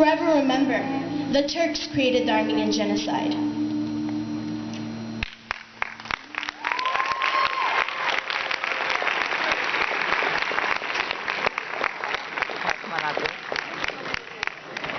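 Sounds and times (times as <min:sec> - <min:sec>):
audience applause: 0:05.2 - 0:14.9
high call from crowd: 0:06.3 - 0:09.8.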